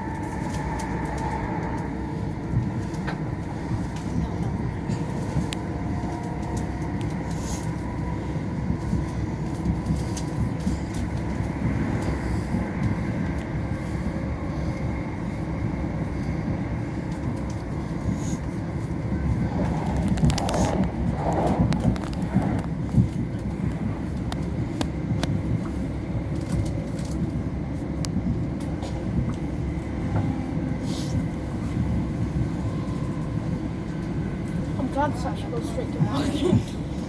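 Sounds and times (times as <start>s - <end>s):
train rumble inside carriage: 0.0s - 37.0s
wheels clicking on track: 16.4s - 27.4s.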